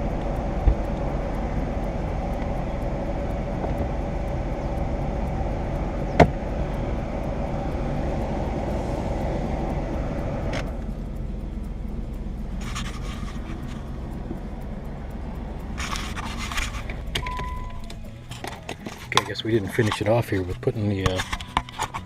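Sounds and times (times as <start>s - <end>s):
motor vehicle running: 0.0s - 22.0s
sharp click: 5.7s - 6.8s, 9.8s - 22.0s.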